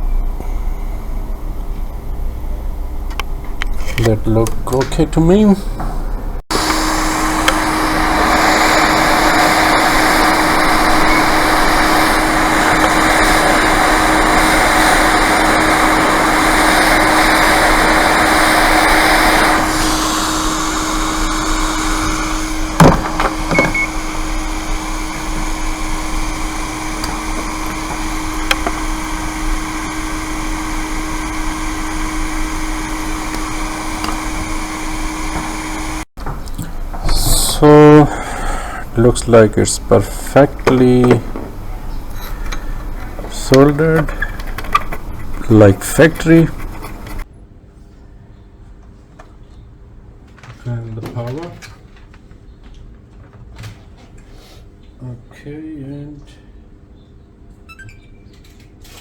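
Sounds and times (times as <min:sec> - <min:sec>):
electric blower running: 0:06.5 - 0:47.2.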